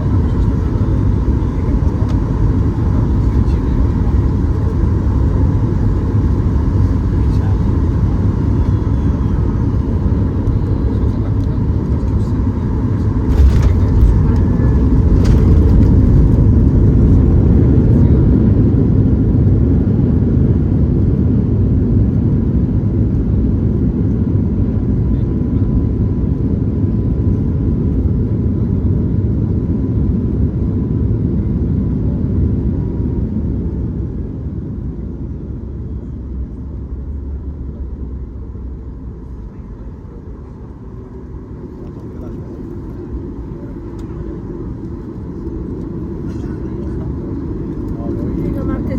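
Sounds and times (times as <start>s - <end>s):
aircraft landing rumble: 0.0s - 48.9s
jet engine whine: 0.0s - 48.9s.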